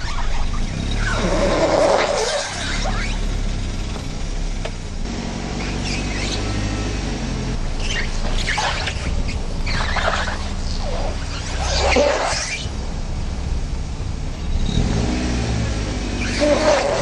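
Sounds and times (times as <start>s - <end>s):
car humming: 0.0s - 17.0s
tyre squeaking against kerb: 7.8s - 12.7s, 16.2s - 17.0s.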